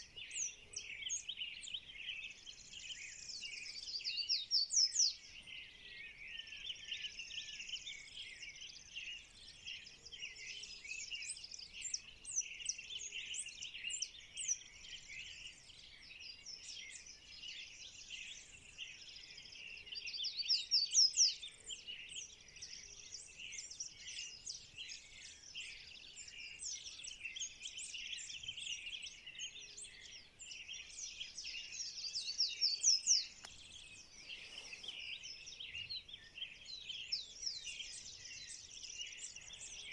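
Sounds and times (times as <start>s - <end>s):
birds chirping and calling: 20.4s - 39.9s.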